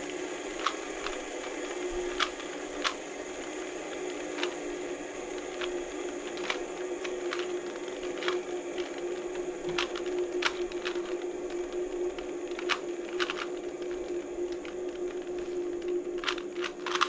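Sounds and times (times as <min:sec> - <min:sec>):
steady low hum: 0:00.0 - 0:17.0
puzzle cube clicking: 0:00.6 - 0:03.0, 0:05.4 - 0:17.0.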